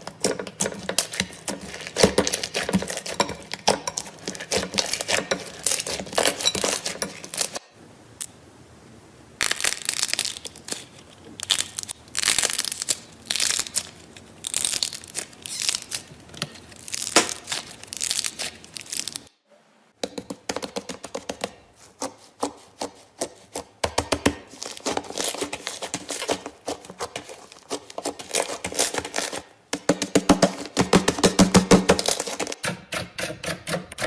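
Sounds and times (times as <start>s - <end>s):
slime squeezed crackling: 9.4s - 19.3s.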